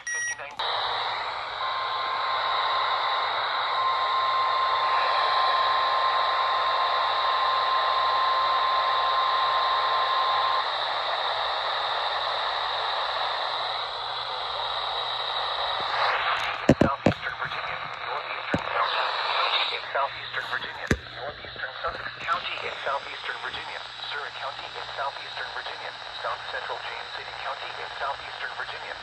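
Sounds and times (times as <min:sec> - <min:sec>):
radio static hiss: 0:15.8 - 0:18.7, 0:19.7 - 0:29.0.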